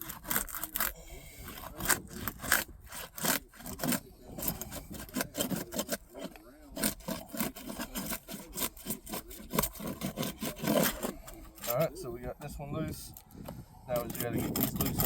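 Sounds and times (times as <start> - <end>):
tool scraping under roof shingles: 0.0 - 12.0.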